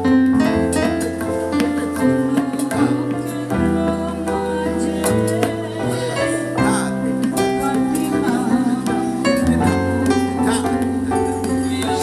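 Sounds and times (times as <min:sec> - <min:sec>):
plucked string notes: 0:00.0 - 0:12.0
long held bass notes: 0:09.0 - 0:11.1.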